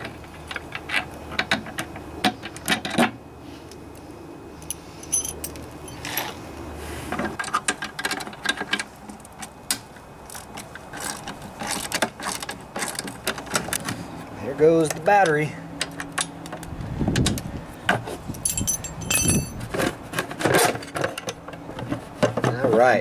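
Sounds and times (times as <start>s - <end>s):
tools clicking and rattling: 4.6s - 6.1s, 18.4s - 19.9s.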